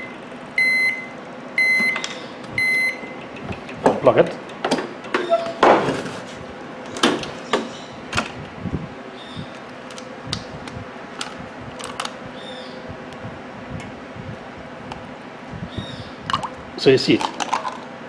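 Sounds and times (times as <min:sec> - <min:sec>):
faint steady hum: 0:00.0 - 0:18.0
objects clicking and knocking: 0:11.2 - 0:12.2, 0:16.3 - 0:17.9.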